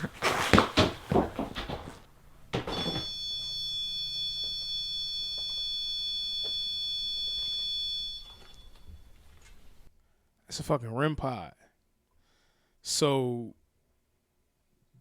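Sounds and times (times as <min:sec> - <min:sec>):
high electronic alarm tone: 0:02.7 - 0:09.0.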